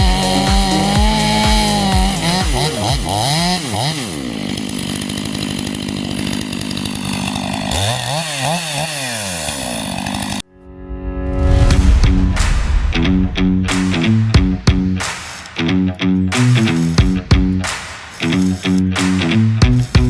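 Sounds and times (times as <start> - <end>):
chainsaw cutting wood: 0.0 - 10.4, 14.6 - 20.0
chainsaw revving: 0.0 - 10.4, 13.8 - 20.0.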